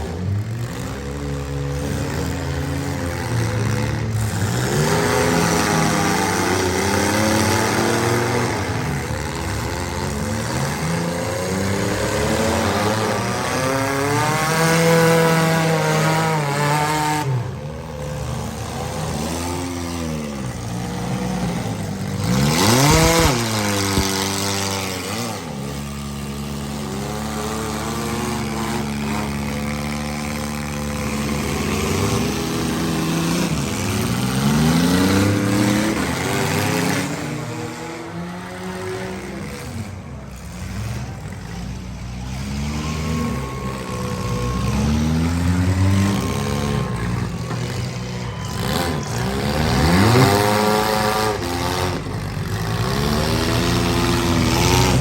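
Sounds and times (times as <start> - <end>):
car engines revving hard: 0.0 - 55.0.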